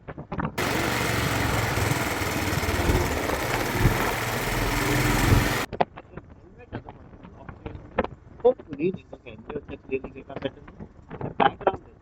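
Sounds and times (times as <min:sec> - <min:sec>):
motorbike engine running: 0:00.6 - 0:05.7.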